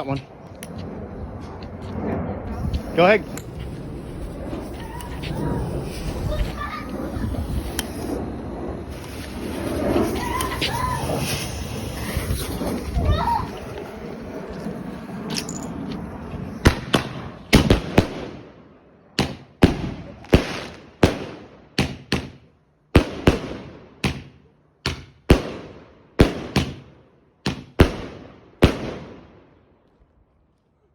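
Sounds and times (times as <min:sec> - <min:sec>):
fireworks bangs: 0:02.5 - 0:15.2, 0:15.9 - 0:18.5, 0:19.2 - 0:22.4, 0:23.0 - 0:29.3.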